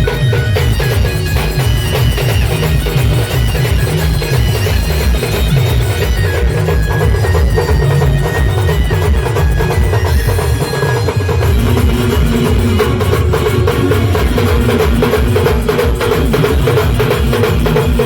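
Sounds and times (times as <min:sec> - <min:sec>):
drums and percussion beat: 0:00.0 - 0:18.0
loud band music: 0:00.0 - 0:18.0.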